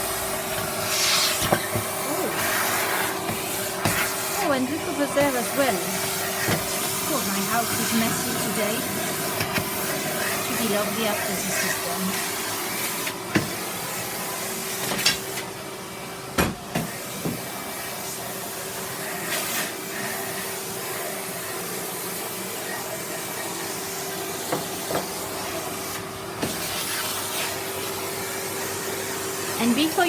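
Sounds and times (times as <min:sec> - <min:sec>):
vacuum cleaner running: 0:00.0 - 0:30.0
vacuum clicks and knocks on floor: 0:06.4 - 0:06.8.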